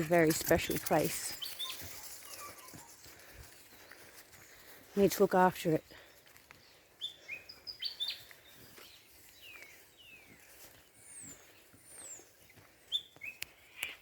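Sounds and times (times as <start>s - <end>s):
birds whistling calls: 1.4s - 2.9s, 6.6s - 14.0s.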